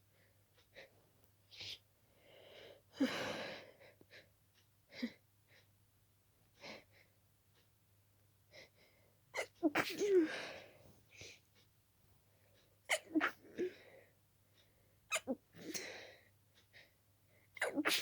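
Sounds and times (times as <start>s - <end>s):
person sneezing: 9.4s - 10.4s, 12.9s - 13.4s, 17.6s - 18.0s.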